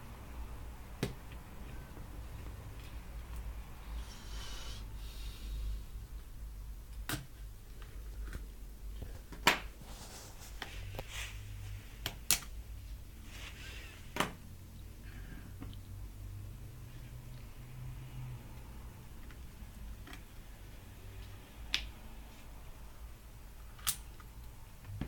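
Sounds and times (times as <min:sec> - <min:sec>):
soft rubbing: 0:09.8 - 0:12.0.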